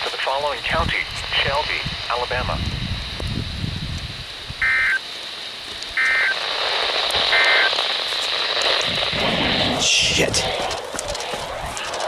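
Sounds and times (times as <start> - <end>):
radio static: 0.0 - 3.2, 4.5 - 5.0, 5.9 - 12.0
warbling buzzy data tones: 4.6 - 5.0, 6.0 - 12.0.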